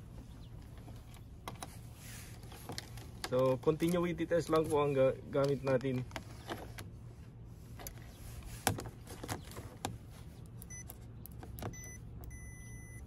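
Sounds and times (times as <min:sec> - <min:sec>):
multimeter continuity beeps: 0:10.6 - 0:10.9, 0:11.7 - 0:13.0.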